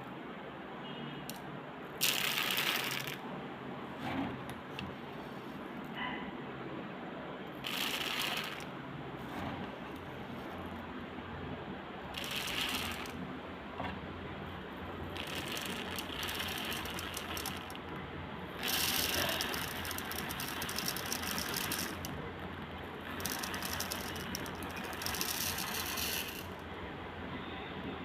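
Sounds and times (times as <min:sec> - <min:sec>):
rice grains rattling: 0:02.0 - 0:03.2, 0:07.6 - 0:08.7, 0:12.2 - 0:13.2, 0:15.1 - 0:17.8, 0:18.6 - 0:26.6.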